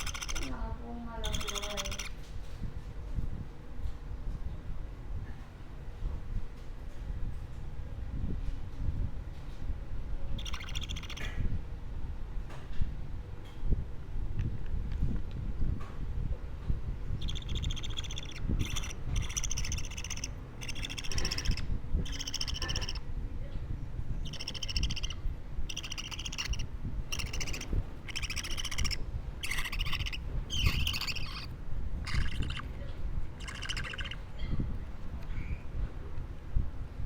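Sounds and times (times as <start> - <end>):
budgerigar chick calling: 0.0 - 0.6, 1.2 - 2.2, 10.4 - 11.4, 17.2 - 23.0, 24.2 - 32.8, 33.4 - 34.3.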